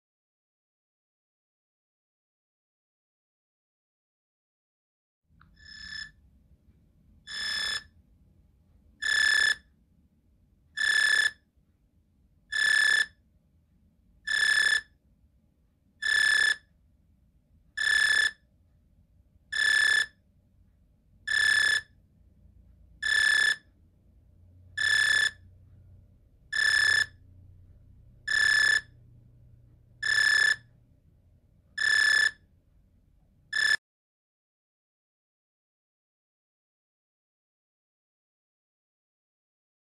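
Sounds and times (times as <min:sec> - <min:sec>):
electronic ringtone beeping: 0:05.6 - 0:06.2, 0:07.3 - 0:07.9, 0:21.3 - 0:21.9, 0:23.0 - 0:23.6, 0:24.8 - 0:25.4, 0:26.5 - 0:27.2, 0:28.3 - 0:28.9, 0:30.0 - 0:30.7, 0:31.8 - 0:32.4, 0:33.5 - 0:33.8.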